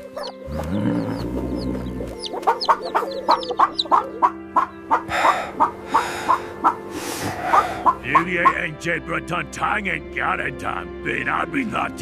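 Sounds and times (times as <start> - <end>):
chickens clucking: 0.0 - 8.6
cartoon background music: 0.0 - 12.0
low rumbling: 0.5 - 3.7.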